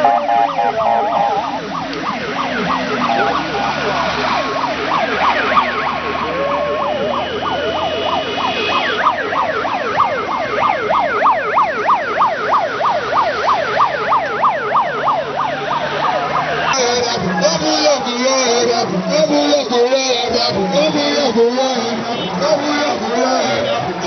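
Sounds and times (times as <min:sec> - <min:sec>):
siren held tones: 0:00.0 - 0:16.8
siren yelping: 0:00.0 - 0:24.0
vehicle noise: 0:00.0 - 0:24.0.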